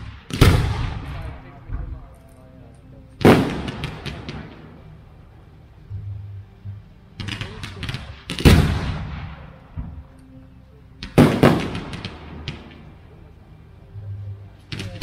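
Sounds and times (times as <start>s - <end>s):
firework crackles: 0.0s - 2.0s, 3.2s - 5.1s, 7.2s - 10.2s, 11.0s - 13.3s
fireworks bursting: 0.0s - 2.1s, 3.2s - 5.0s, 7.2s - 10.2s, 11.0s - 13.2s, 14.6s - 15.0s.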